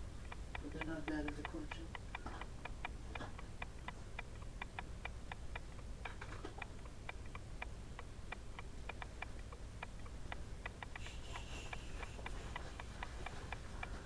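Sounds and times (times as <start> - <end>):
faint rapid ticking: 0.0 - 14.0
low steady hum: 0.0 - 14.0.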